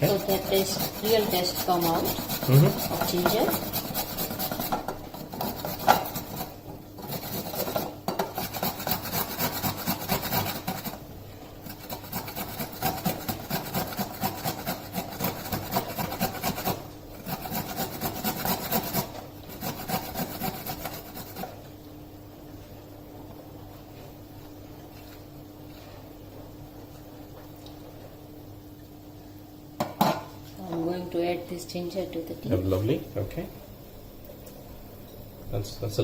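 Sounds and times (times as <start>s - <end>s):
ginger grated on a grater: 0.0s - 11.0s, 11.6s - 21.6s.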